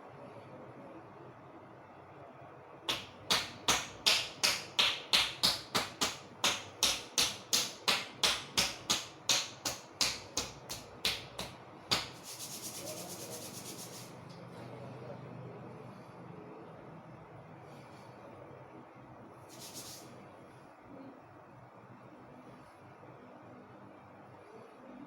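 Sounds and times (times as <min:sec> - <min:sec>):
hand slapping body during massage: 0:02.9 - 0:14.1.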